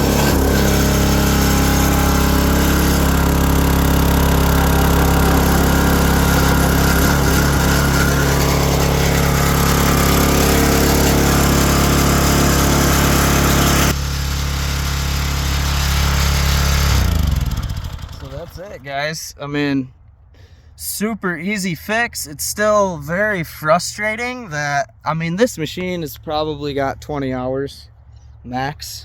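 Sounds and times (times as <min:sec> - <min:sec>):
single-cylinder engine running: 0:00.0 - 0:18.8.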